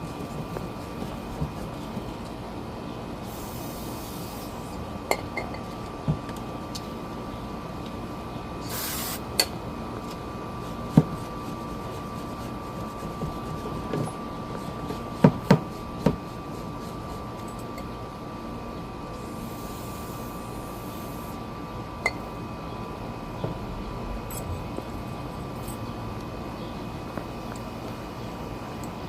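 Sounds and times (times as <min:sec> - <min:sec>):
steady background hiss: 0:00.0 - 0:13.0
faint steady whine: 0:00.0 - 0:29.0
short hiss: 0:08.6 - 0:09.2.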